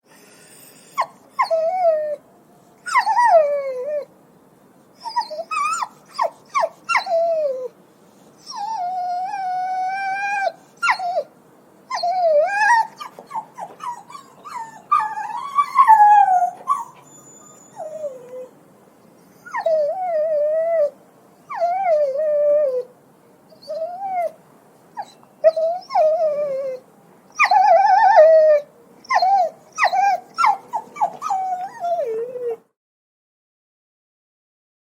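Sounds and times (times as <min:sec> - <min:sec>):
dog yelping and whimpering: 0:00.4 - 0:02.2, 0:02.8 - 0:04.1, 0:05.0 - 0:07.7, 0:08.4 - 0:11.3, 0:11.9 - 0:18.5, 0:19.2 - 0:22.9, 0:23.5 - 0:24.4, 0:25.0 - 0:32.7.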